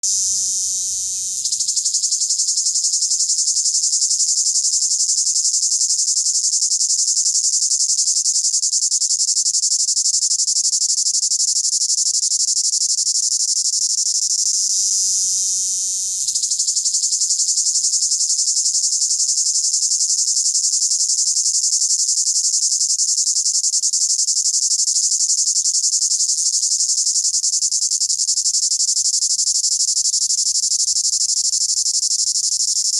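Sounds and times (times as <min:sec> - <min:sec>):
cicada buzzing: 0:00.0 - 0:05.4, 0:14.1 - 0:22.5.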